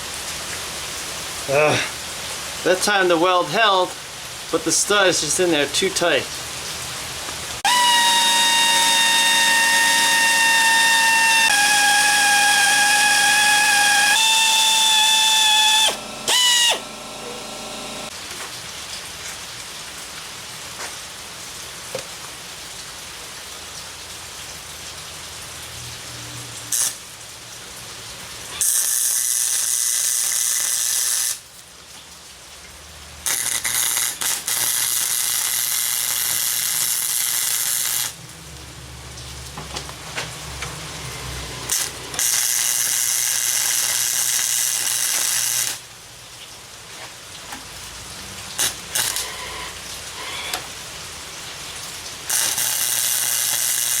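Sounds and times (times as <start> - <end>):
electric drill whining: 7.6 - 18.1, 28.5 - 31.4, 41.7 - 45.8, 48.6 - 50.7, 52.3 - 54.0
welding arc crackle: 7.6 - 18.1, 26.7 - 27.0, 28.5 - 31.4, 33.2 - 38.2, 41.1 - 45.9, 48.5 - 50.7, 52.1 - 54.0.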